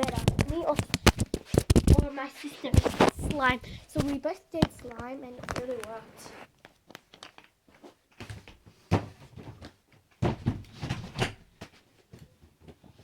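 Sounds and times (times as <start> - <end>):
objects knocking and thumping: 0.0 - 2.1, 2.7 - 5.7, 8.2 - 13.0.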